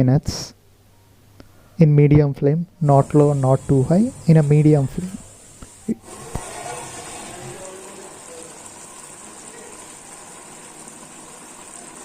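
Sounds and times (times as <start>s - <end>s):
chicken sizzling in oil: 3.1s - 12.0s.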